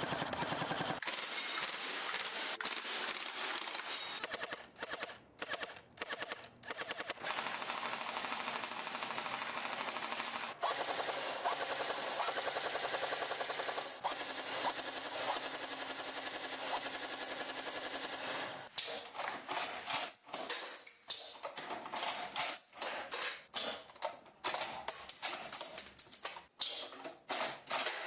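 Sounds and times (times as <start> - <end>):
airsoft gun firing full auto: 0.0 - 18.6.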